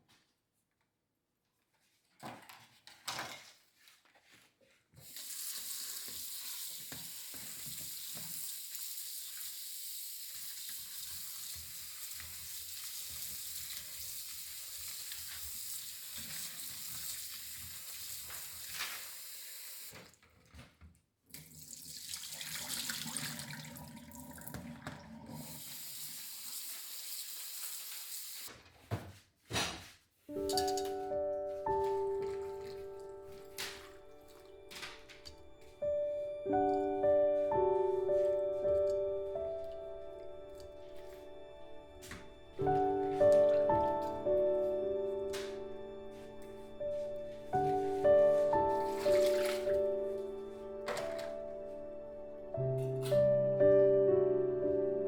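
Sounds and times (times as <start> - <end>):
tap running into a sink: 5.0 - 20.2.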